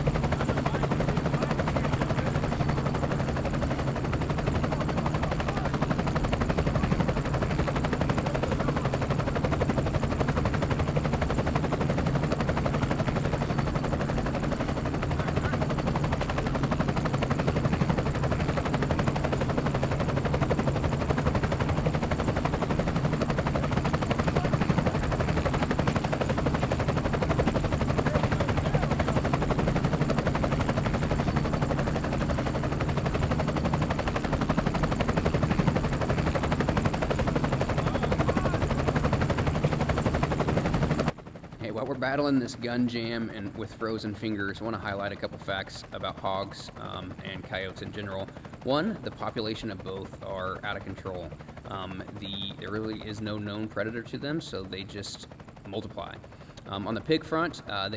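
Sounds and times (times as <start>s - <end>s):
helicopter rotor chop: 0.0s - 57.9s.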